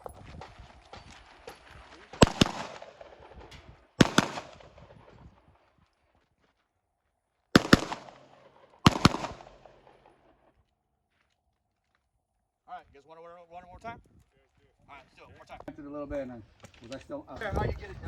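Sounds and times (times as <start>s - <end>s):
handgun shots with echo: 2.1s - 3.4s, 4.0s - 4.8s, 7.6s - 9.9s.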